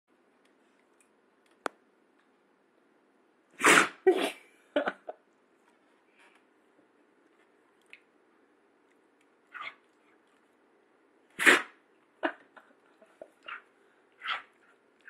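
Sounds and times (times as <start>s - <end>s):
dog sneezing: 3.6s - 4.4s, 11.4s - 11.8s.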